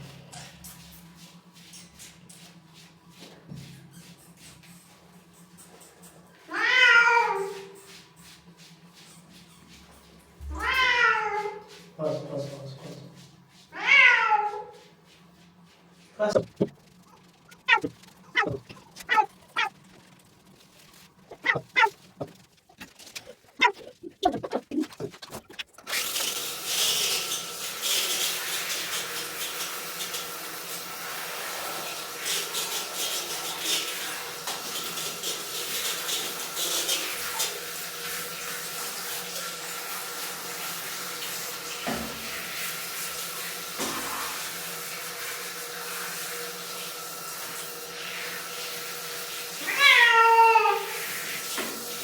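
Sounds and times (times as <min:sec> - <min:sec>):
water running and splashing: 0:14.8 - 0:52.0.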